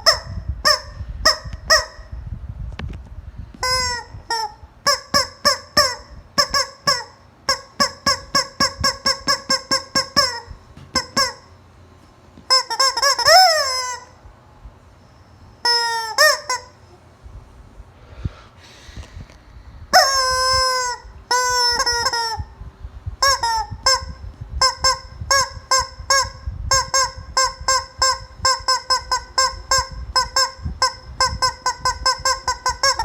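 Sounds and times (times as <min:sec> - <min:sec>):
rubber chicken toy squeaking: 0:00.0 - 0:02.0, 0:03.6 - 0:11.5, 0:12.5 - 0:14.2, 0:15.6 - 0:16.8, 0:20.0 - 0:22.5, 0:23.2 - 0:33.0.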